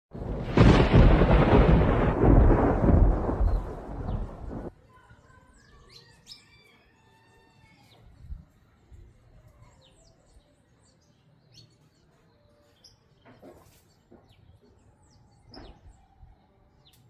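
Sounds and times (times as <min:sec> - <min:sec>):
deep rumble: 0:00.2 - 0:04.7
birds calling and whistling: 0:05.2 - 0:08.4, 0:09.4 - 0:17.0.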